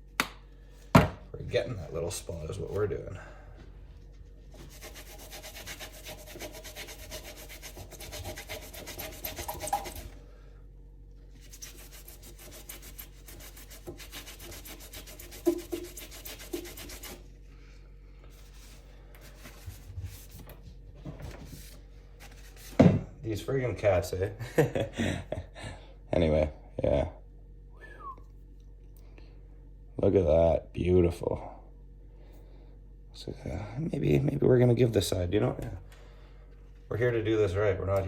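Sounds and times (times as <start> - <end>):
sponge scrubbing knife blade: 4.6 - 10.2, 11.4 - 17.2.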